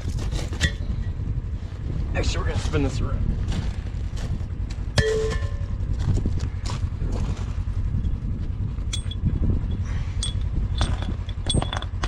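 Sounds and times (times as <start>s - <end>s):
steady low rumble: 0.0s - 12.0s
metallic clinks: 8.9s - 12.0s
steel parts knocking: 8.9s - 12.0s.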